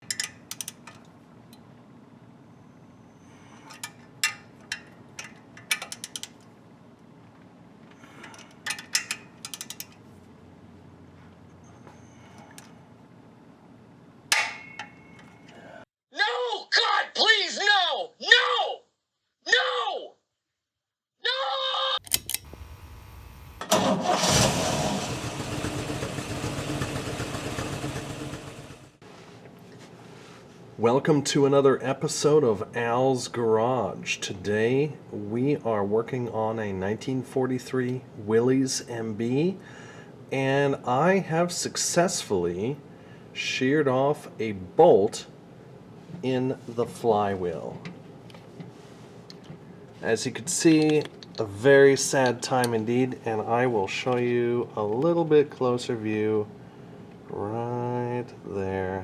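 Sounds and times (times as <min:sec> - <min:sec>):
ratchet wrench clicking: 0:00.1 - 0:00.9, 0:05.7 - 0:06.4, 0:08.7 - 0:10.0
engine starting and running: 0:22.0 - 0:29.0.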